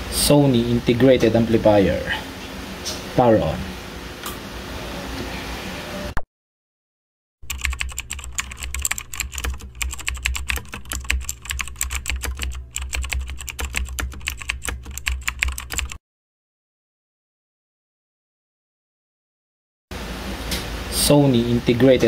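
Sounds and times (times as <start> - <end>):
keyboard typing clicks: 7.4 - 16.0.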